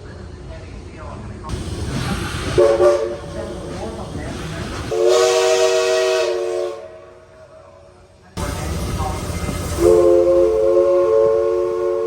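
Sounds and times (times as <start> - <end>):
locomotive rumble and hiss: 0.0 - 12.0
steam whistle chord: 4.9 - 6.9, 9.8 - 12.0.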